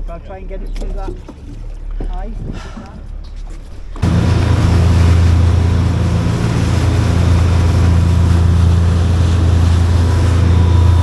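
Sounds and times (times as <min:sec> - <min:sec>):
wind: 0:00.0 - 0:11.0
rushing water: 0:03.9 - 0:11.0
motorboat engine drone: 0:04.0 - 0:11.0.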